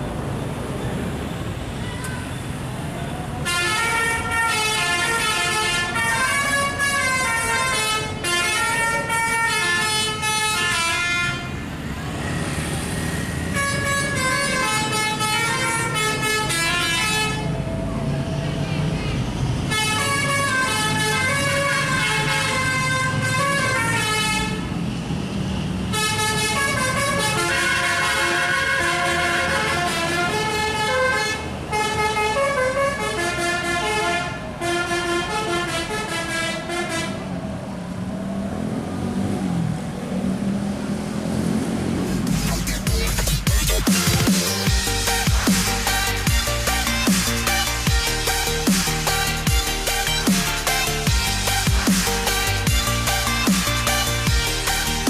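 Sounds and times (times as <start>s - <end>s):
bus engine and road noise: 0.0s - 55.0s
multi-tone air horn melody: 3.4s - 11.7s, 13.4s - 17.6s, 19.7s - 24.7s, 25.9s - 37.4s, 43.6s - 55.0s.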